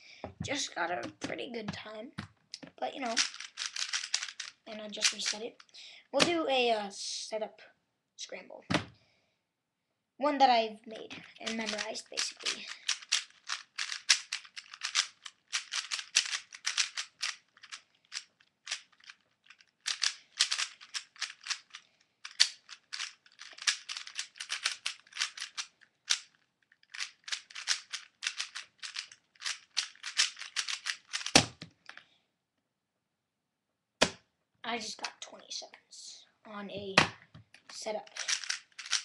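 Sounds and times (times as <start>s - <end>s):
puzzle cube plastic clicking: 2.5s - 5.4s, 11.0s - 32.0s, 36.9s - 39.0s.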